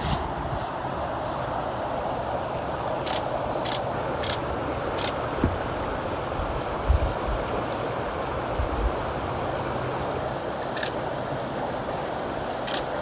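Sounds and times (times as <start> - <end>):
creek water rushing: 0.7 - 13.0
sharp clicks: 3.1 - 5.3, 12.7 - 12.9
low thumps: 5.4 - 5.8.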